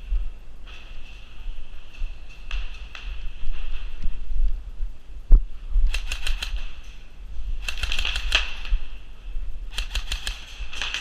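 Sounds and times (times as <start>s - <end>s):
airsoft guns firing bursts: 5.9s - 6.8s, 7.6s - 8.8s, 9.7s - 11.0s.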